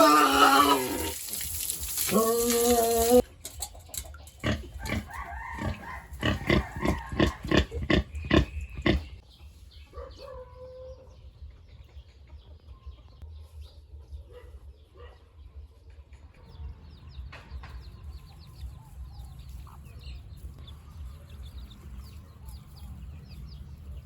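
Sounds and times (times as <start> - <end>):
pigs grunting and squealing: 0.0 - 1.2, 2.0 - 3.3, 4.3 - 9.2.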